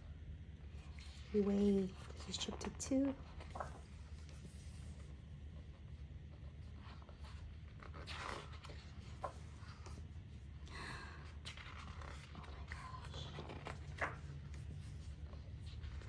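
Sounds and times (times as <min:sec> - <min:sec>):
low steady hum: 0:00.0 - 0:16.0
paper pages rustling: 0:00.8 - 0:16.0.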